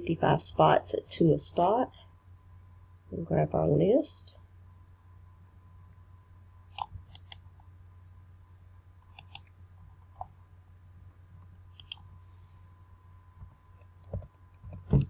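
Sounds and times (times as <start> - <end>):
faint electrical hum: 0.0 - 15.0
computer mouse clicking: 6.7 - 7.4, 9.0 - 9.5, 11.7 - 12.0.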